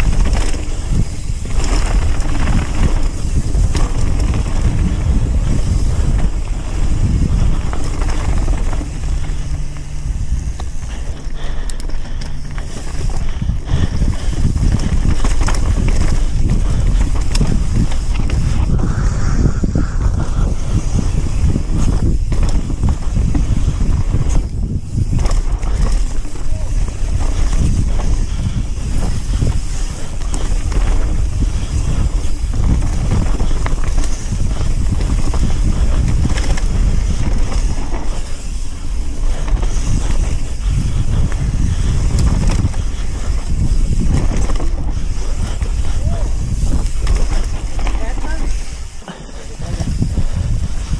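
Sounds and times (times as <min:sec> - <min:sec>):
bike rattling and clicking: 0:00.0 - 0:50.9
low tyre rumble: 0:00.0 - 0:50.9
wind buffeting microphone: 0:00.0 - 0:50.9.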